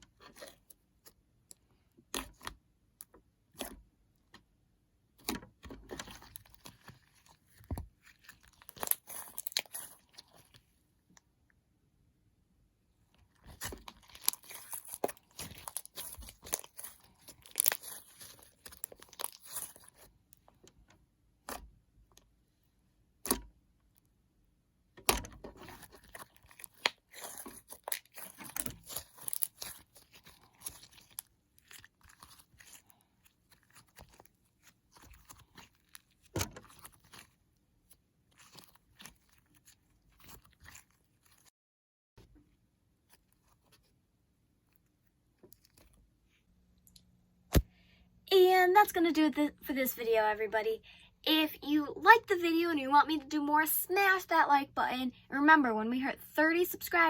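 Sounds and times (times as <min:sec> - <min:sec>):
slime squished by hand: 0:05.2 - 0:10.6, 0:13.4 - 0:20.1, 0:25.0 - 0:41.5.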